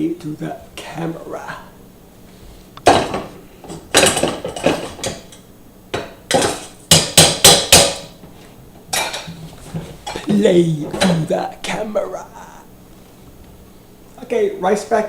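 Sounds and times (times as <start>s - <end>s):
colander knocking against pot: 2.8s - 5.3s, 5.9s - 8.2s.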